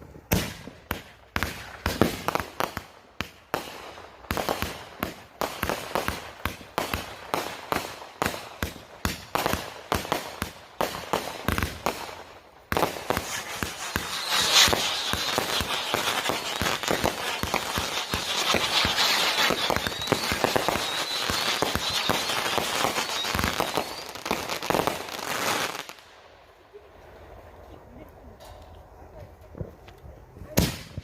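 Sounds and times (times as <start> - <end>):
dense firework crackling: 0.3 - 26.1.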